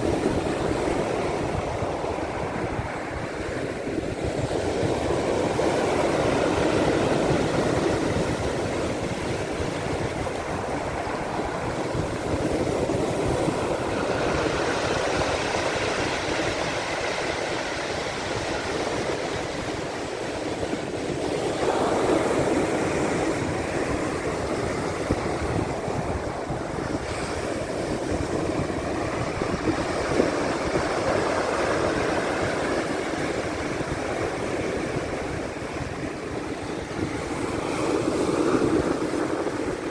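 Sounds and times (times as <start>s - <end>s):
surf washing onto shore: 0.0s - 39.9s.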